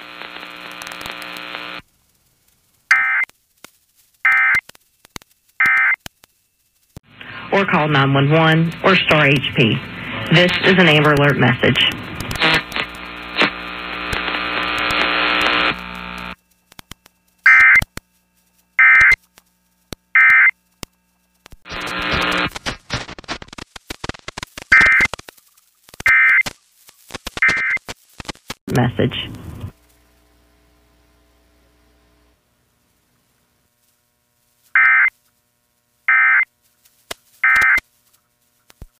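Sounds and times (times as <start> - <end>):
hiss with low hum: 0.0 - 39.0
digital data tone bursts: 2.9 - 3.3, 5.6 - 6.0, 17.4 - 17.8, 18.8 - 19.2, 20.2 - 20.5, 24.7 - 25.2, 26.0 - 26.5, 27.4 - 28.0, 34.8 - 35.1, 36.1 - 36.5, 37.4 - 37.8
warbling data tones: 2.9 - 3.3, 4.2 - 4.6, 5.4 - 6.9, 17.4 - 17.9, 18.8 - 19.3, 20.1 - 20.7, 23.5 - 28.3, 37.4 - 37.8
sharp clicks: 4.3 - 6.2, 37.1 - 37.8
clicks: 10.2 - 18.0, 37.5 - 37.8.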